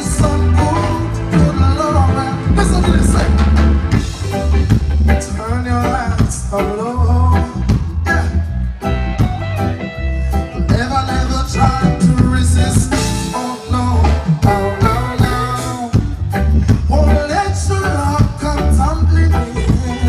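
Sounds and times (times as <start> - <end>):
reggae music with singing: 0.0 - 20.0.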